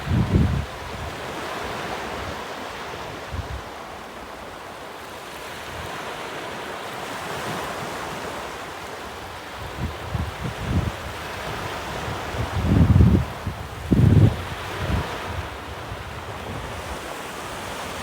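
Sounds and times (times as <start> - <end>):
wind buffeting microphone: 0.0 - 2.4, 9.6 - 18.0
sea surf washing onto shore: 0.0 - 18.0.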